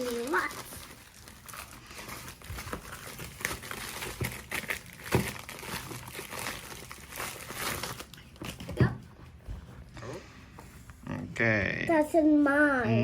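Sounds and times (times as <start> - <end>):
packaging crinkling and rustling: 0.0 - 9.0.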